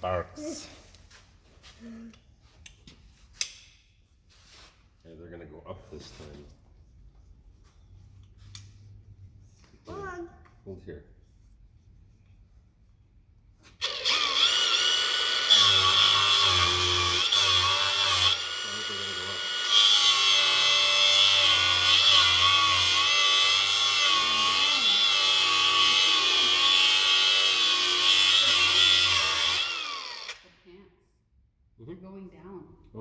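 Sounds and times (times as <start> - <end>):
angle grinder grinding: 13.8 - 30.6.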